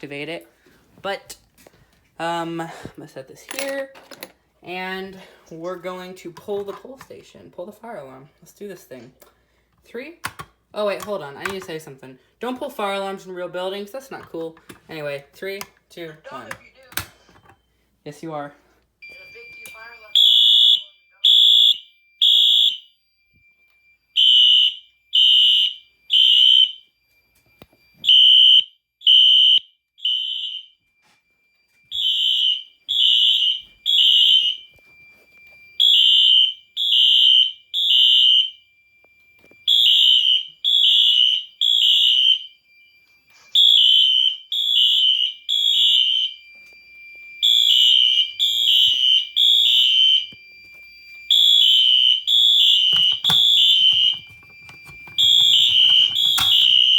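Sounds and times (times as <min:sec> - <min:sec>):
harsh high fire alarm horn blasts: 0:19.0 - 0:23.0, 0:24.1 - 0:27.0, 0:28.0 - 0:38.8, 0:39.4 - 0:42.6, 0:43.5 - 0:56.9.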